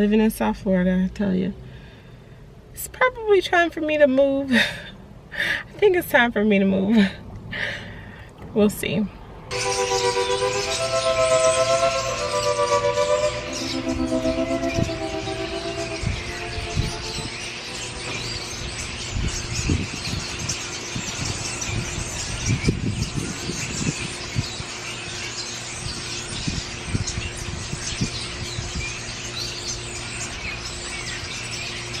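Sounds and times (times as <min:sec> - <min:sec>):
small birds chirping: 0:09.5 - 0:32.0
wind buffeting microphone: 0:13.3 - 0:24.8, 0:25.8 - 0:29.0.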